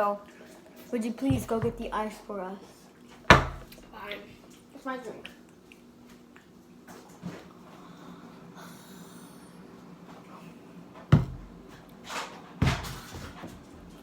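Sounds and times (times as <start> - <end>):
thumps: 1.2 - 2.2, 3.3 - 3.8, 11.1 - 11.6.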